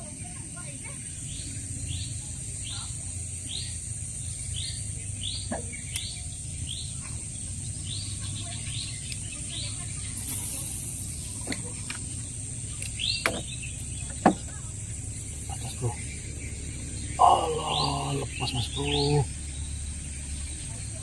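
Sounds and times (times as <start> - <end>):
high-pitched insect drone: 6.0 - 21.0.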